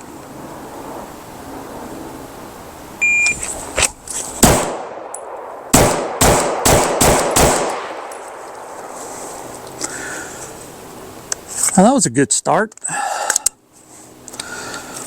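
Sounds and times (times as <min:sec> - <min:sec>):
shot timer beep: 0:03.0 - 0:03.4
pistol shots: 0:04.4 - 0:08.3.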